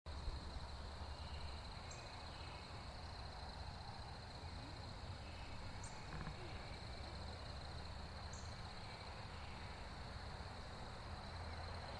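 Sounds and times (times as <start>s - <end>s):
bird chirp: 1.0s - 3.2s, 4.2s - 10.0s.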